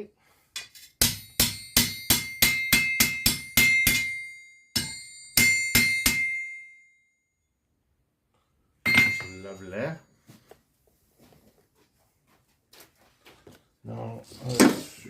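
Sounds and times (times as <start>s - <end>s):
hammer striking metal: 0.6s - 6.8s, 8.9s - 9.7s.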